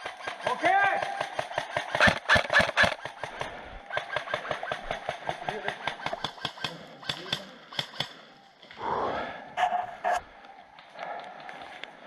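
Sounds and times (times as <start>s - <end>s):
airsoft guns firing: 0.0s - 8.2s.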